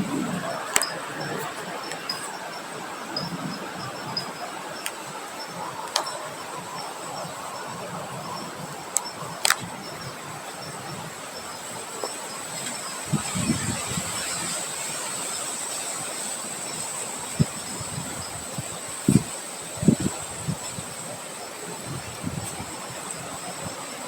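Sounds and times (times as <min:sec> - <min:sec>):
wind rushing: 0:00.0 - 0:04.2
wind buffeting microphone: 0:00.0 - 0:24.0
sharp clicks: 0:08.9 - 0:09.7.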